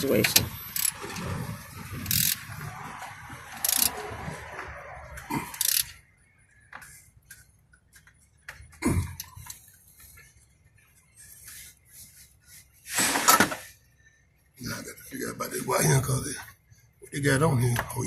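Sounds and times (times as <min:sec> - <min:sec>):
socket ratchet clicking: 0:00.7 - 0:01.0, 0:02.0 - 0:02.4, 0:03.6 - 0:04.0, 0:05.6 - 0:05.9
loud scrape: 0:12.9 - 0:13.7.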